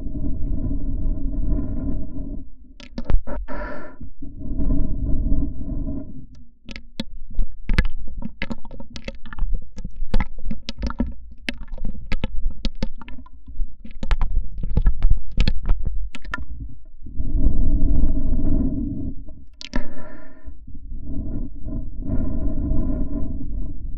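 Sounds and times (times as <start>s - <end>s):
low rumble: 0.0s - 7.4s, 15.8s - 23.9s
plastic hose clicks and taps: 2.8s - 3.2s, 7.7s - 16.5s.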